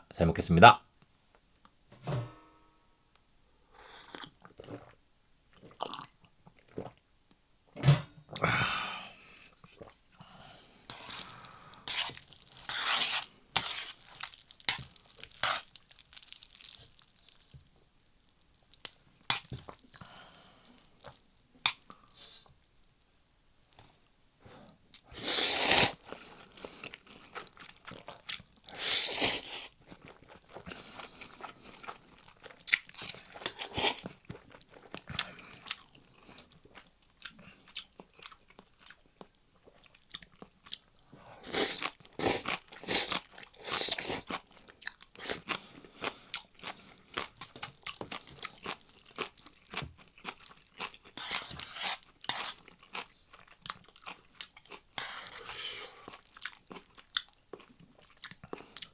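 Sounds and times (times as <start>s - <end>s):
slurping noodles: 10.9s - 14.3s, 25.1s - 27.0s, 28.7s - 29.8s, 33.0s - 34.2s, 41.4s - 44.3s.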